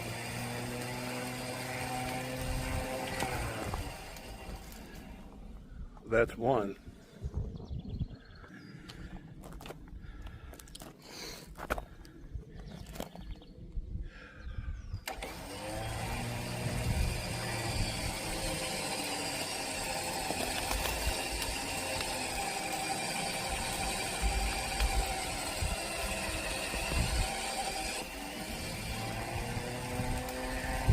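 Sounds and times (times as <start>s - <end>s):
electric winch motor whining: 0.0s - 5.4s, 15.0s - 30.9s.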